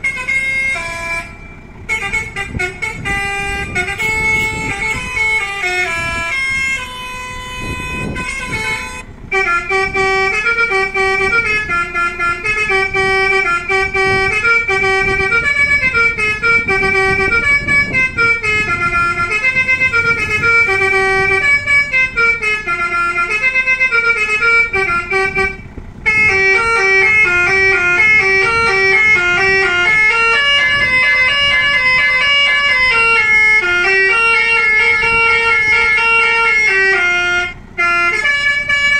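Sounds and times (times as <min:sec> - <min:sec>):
electric musical horn melody: 0:00.0 - 0:38.9.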